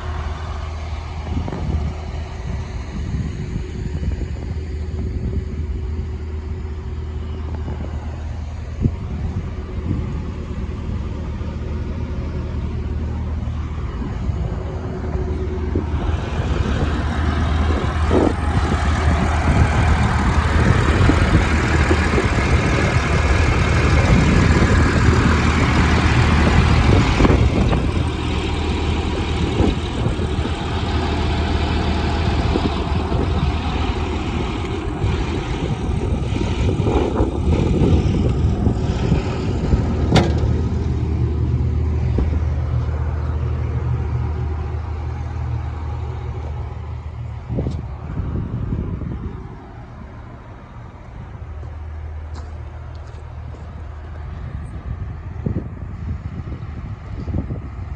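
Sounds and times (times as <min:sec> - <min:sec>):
excavator diesel engine humming: 0:00.0 - 0:57.9.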